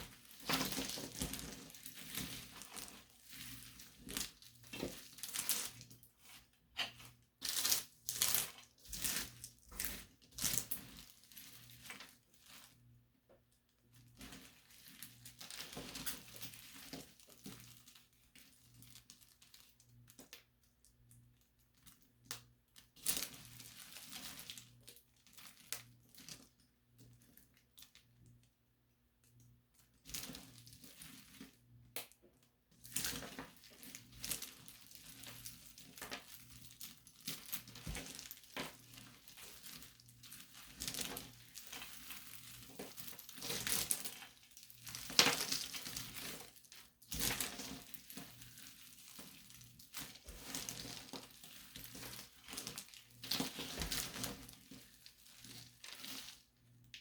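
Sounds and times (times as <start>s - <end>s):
brittle material crinkling: 0.0s - 12.7s, 32.9s - 56.6s.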